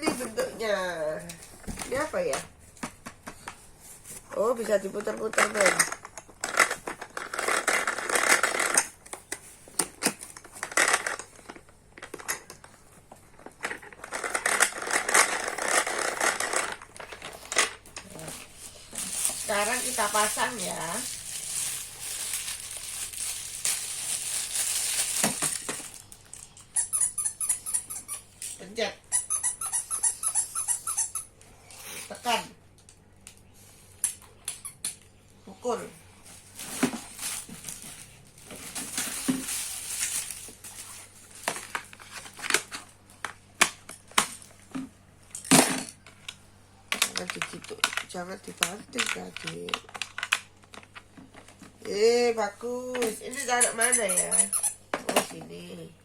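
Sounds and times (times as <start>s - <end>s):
plastic crinkling and rustling: 1.2s - 26.6s, 36.2s - 44.8s.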